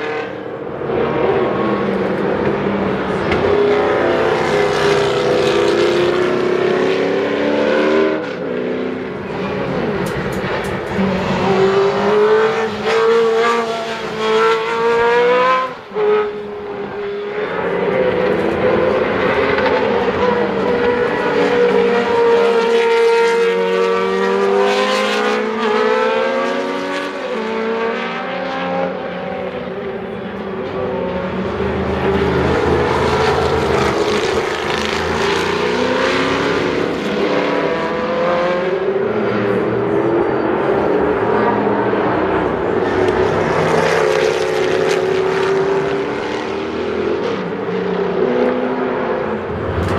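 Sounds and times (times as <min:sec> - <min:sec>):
race car engines accelerating past: 0:00.0 - 0:49.9.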